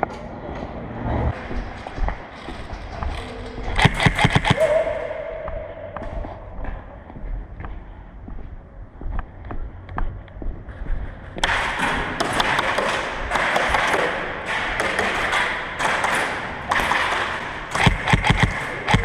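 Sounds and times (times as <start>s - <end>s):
airsoft gun shots: 11.4s - 19.0s.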